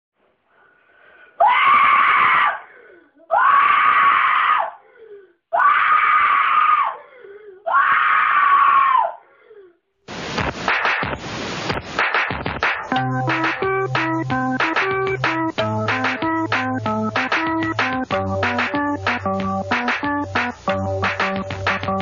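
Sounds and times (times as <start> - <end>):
person breathing: 0.5 - 1.4, 2.6 - 3.2, 4.8 - 5.4, 7.0 - 7.6
person screaming: 1.4 - 2.7, 3.3 - 4.8, 5.5 - 9.2.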